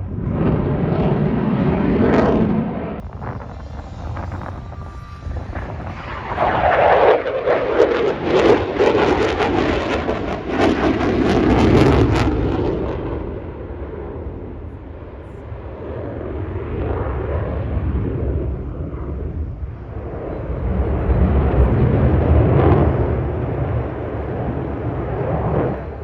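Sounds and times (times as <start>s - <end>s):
fighter jet passing: 0.0s - 26.0s.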